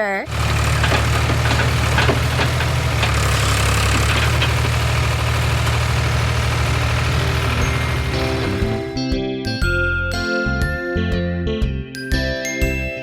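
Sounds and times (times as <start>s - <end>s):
tractor engine running: 0.0s - 9.0s.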